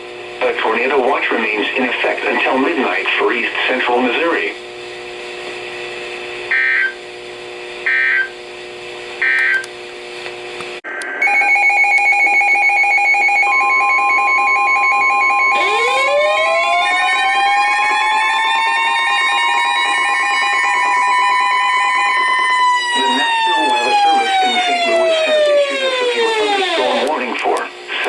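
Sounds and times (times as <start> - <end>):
electronic alarm beeps: 6.5 - 7.0, 7.9 - 8.3, 9.2 - 9.7, 11.2 - 16.1
siren-like rising tone: 11.2 - 27.2.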